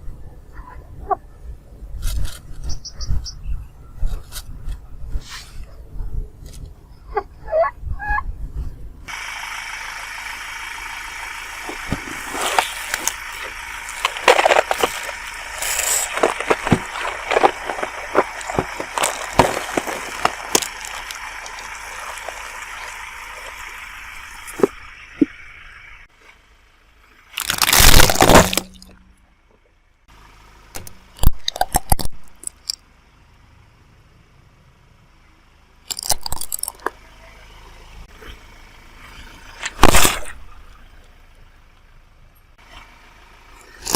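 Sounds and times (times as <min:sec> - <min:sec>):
objects cracking under car tyre: 0:11.4 - 0:25.4, 0:27.2 - 0:29.2, 0:30.8 - 0:32.8, 0:35.9 - 0:37.0, 0:39.6 - 0:40.7.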